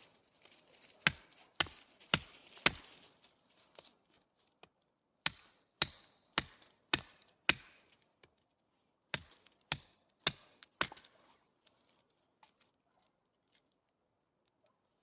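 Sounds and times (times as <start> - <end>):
wood chopping strokes: 1.0 - 3.2, 4.6 - 8.4, 9.1 - 11.4.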